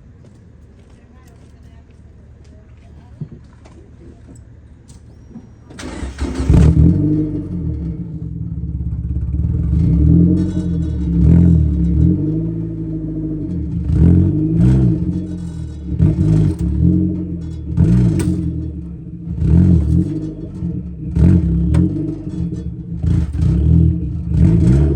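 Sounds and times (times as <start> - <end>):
car engine revving: 5.8 - 24.9.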